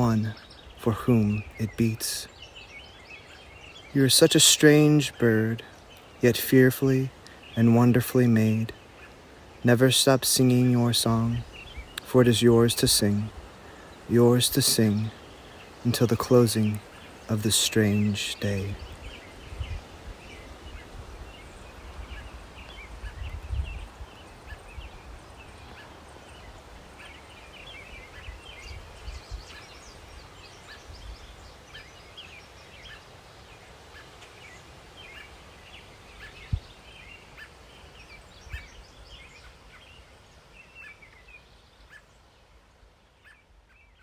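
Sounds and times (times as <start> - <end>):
small birds chirping: 0.0 - 44.0
steady background hiss: 0.0 - 44.0.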